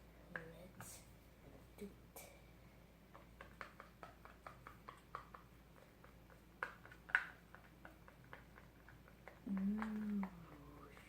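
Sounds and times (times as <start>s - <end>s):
faint clicks and taps: 0.3s - 1.0s, 3.1s - 11.0s.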